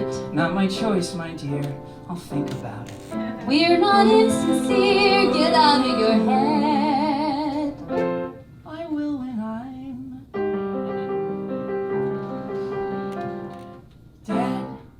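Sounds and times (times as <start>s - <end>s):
piano chords: 0.0s - 8.6s, 10.2s - 14.9s
person singing with vibrato: 3.5s - 7.8s.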